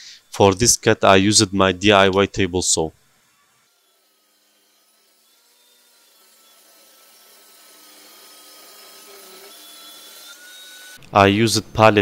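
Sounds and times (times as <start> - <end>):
table saw humming: 0.0 - 12.0.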